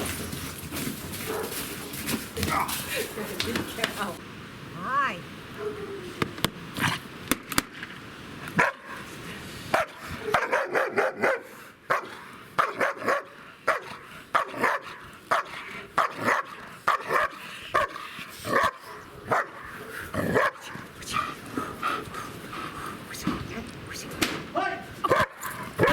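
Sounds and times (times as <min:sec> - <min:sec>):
dog barking: 0:01.2 - 0:01.7, 0:08.6 - 0:09.0, 0:09.7 - 0:20.8, 0:25.0 - 0:25.9.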